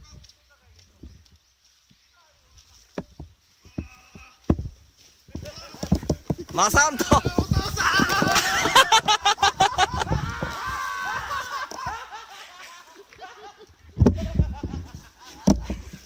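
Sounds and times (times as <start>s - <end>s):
group of people laughing: 5.3s - 6.0s, 6.9s - 16.0s.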